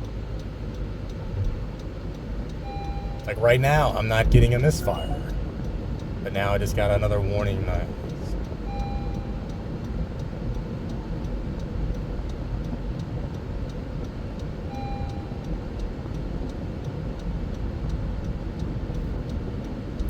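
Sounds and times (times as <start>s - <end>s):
engine and road rumble: 0.0s - 20.0s
light ticking: 0.0s - 20.0s
dashboard warning chime: 2.2s - 11.0s, 14.6s - 16.1s.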